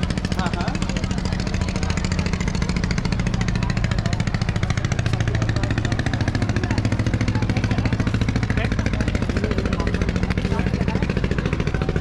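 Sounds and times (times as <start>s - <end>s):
engine chugging with low hum: 0.0s - 12.0s.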